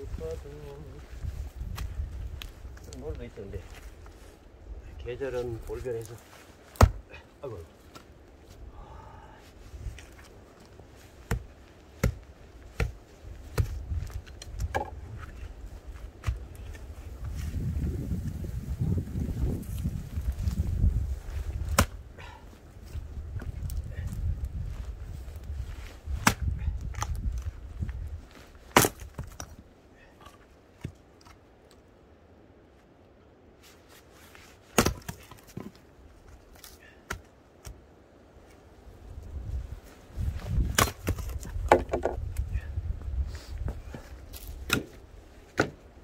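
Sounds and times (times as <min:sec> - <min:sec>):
sharp wooden knocks: 0:14.6 - 0:15.0, 0:40.7 - 0:42.2.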